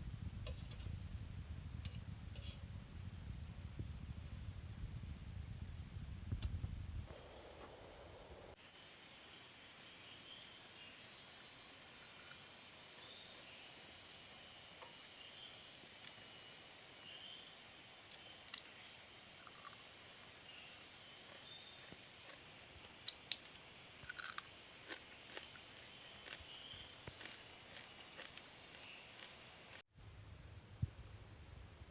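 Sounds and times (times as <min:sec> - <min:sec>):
insect chirping: 0:08.5 - 0:29.8
insects buzzing: 0:08.5 - 0:29.8.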